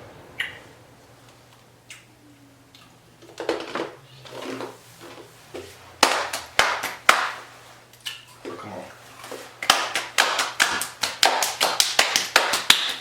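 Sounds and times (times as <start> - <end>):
low steady hum: 0.0 - 12.7
sharp hand claps: 6.0 - 7.5, 9.6 - 13.0.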